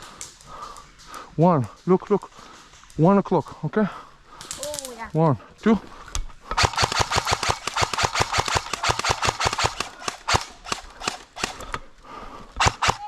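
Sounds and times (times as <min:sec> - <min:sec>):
airsoft guns firing rapidly: 0:06.6 - 0:11.7, 0:12.6 - 0:13.0.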